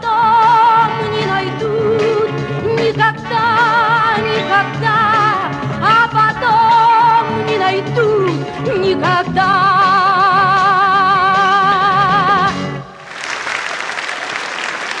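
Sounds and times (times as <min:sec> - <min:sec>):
person singing with vibrato: 0:00.0 - 0:13.1
backing music: 0:00.0 - 0:15.0
applause: 0:13.0 - 0:15.0.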